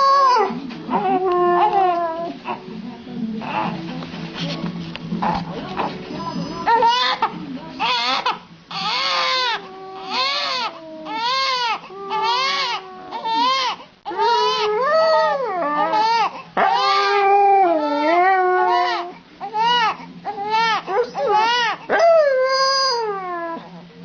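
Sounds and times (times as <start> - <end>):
wailing cries: 6.6 - 23.8.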